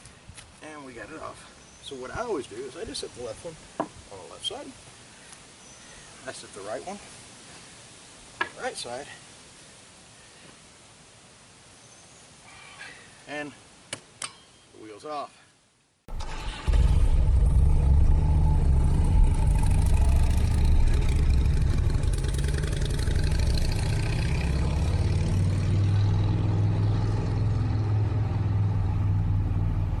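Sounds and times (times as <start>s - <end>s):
motorcycle engine rumbling: 16.1s - 30.0s.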